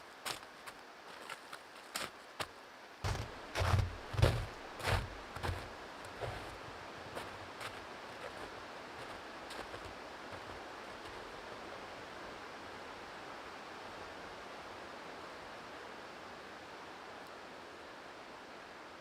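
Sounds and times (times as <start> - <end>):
forest ambience rushing: 0.0 - 14.2.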